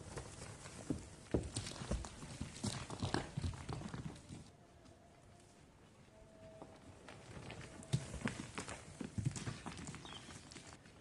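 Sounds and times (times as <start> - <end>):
faint thin tone: 4.5 - 7.0.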